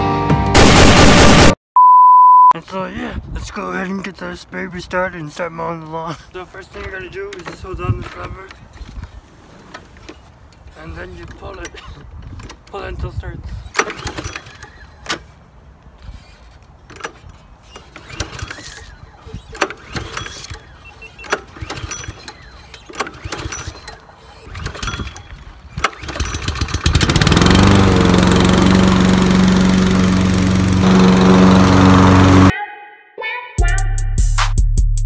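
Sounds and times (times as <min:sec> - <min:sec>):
recoil starter cord pulls: 0:06.7 - 0:32.5
lawn mower engine running: 0:13.7 - 0:32.5.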